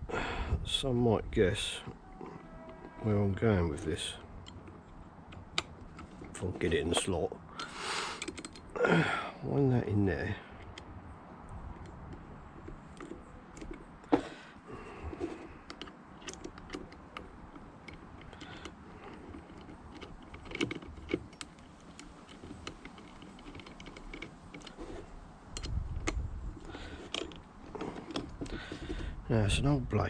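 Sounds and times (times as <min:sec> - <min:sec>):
dull handling knocks: 0:12.1 - 0:14.4.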